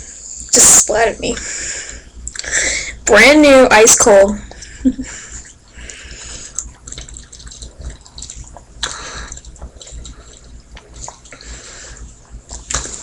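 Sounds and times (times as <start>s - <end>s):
person gulping drink: 5.8s - 13.0s.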